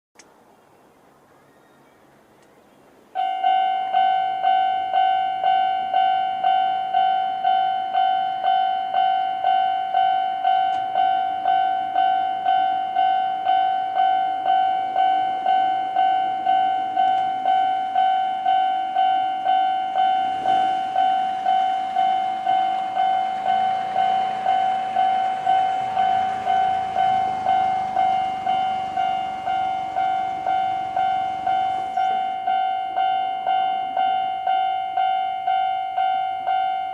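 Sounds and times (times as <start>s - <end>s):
level-crossing alarm ding: 3.2s - 36.9s
train wheel and running noise: 4.3s - 36.9s.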